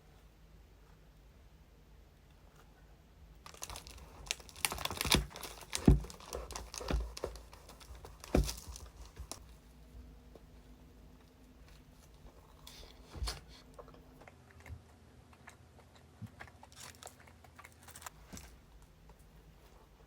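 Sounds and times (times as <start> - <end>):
handling knocks: 3.5 - 9.4
packaging crinkling: 3.5 - 9.5, 16.7 - 18.6.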